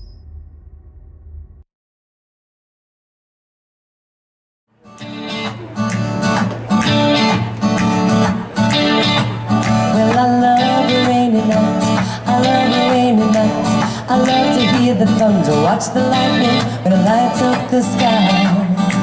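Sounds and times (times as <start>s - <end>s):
guitar strumming: 4.8s - 19.0s
country band playing: 4.9s - 19.0s.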